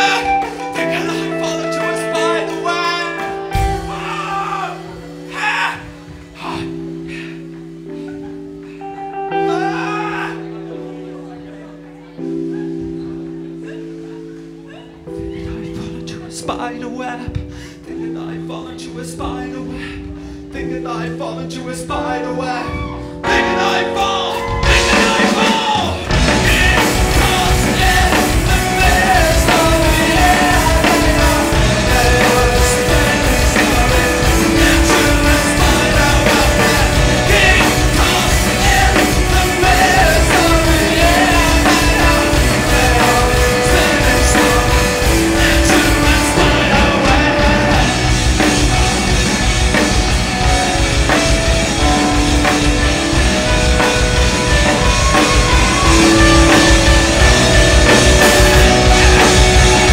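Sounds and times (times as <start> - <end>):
drum kit steady beat: 0.0 - 8.6, 23.3 - 59.9
rock band playing live: 0.0 - 18.5, 19.2 - 59.9.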